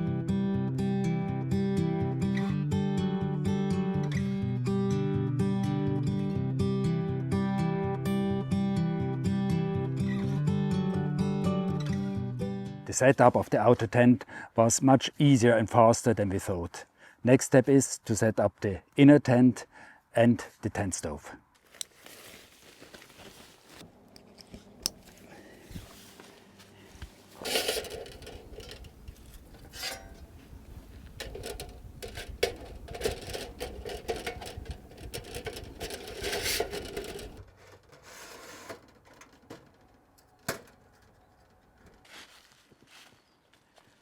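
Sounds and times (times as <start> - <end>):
scraping and rustling: 21.8 - 23.8, 25.7 - 39.8
metallic clinks and knocks: 27.4 - 37.4.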